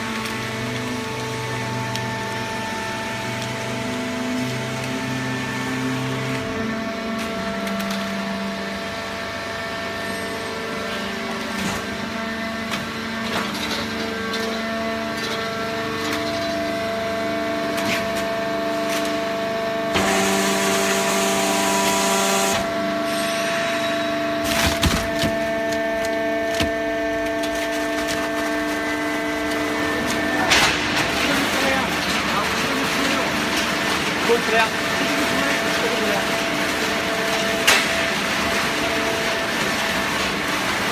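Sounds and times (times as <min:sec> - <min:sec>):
cardboard crackling and snapping: 0:24.4 - 0:31.8.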